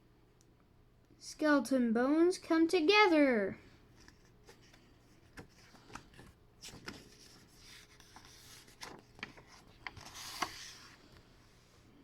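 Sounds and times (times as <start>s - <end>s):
book pages rustling: 3.9s - 11.7s.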